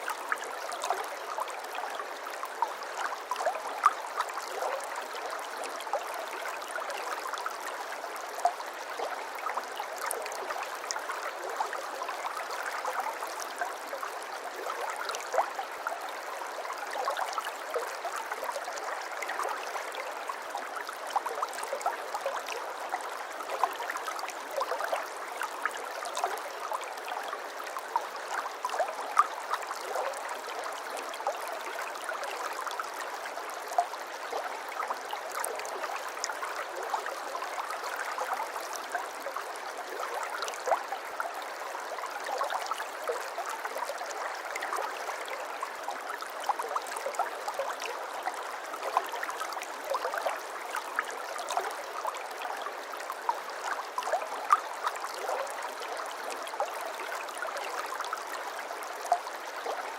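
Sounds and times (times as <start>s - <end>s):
stream babbling over stones: 0.0s - 59.9s.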